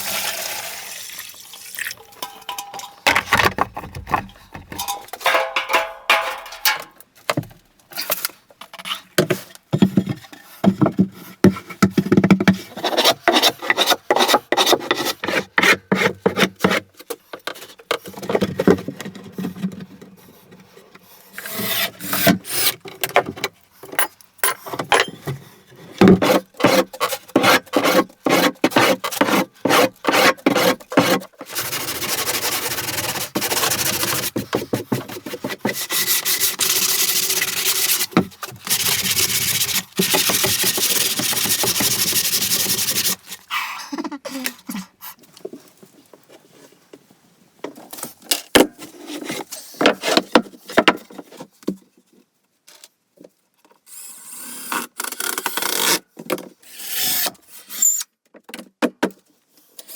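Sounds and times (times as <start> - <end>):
knocks and scrapes: 2.0 - 20.8, 33.3 - 43.4
hand tool rasping wood: 12.7 - 16.8, 26.1 - 43.2.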